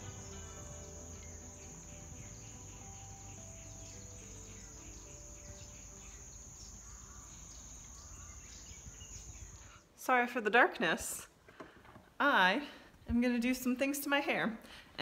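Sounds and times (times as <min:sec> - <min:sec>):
insects chirping: 0:00.0 - 0:09.8.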